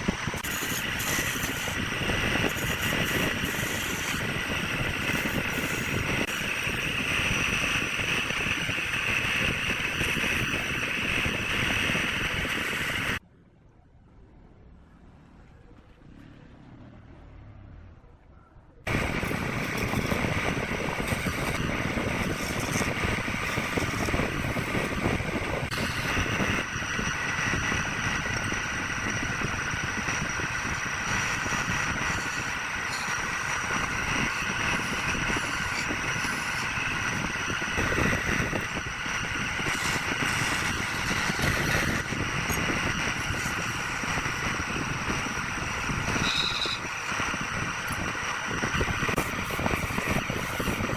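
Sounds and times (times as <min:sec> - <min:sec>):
turning tool cutting wood: 0:00.0 - 0:13.2, 0:18.9 - 0:50.9
wood lathe running: 0:00.0 - 0:13.2, 0:18.9 - 0:50.9.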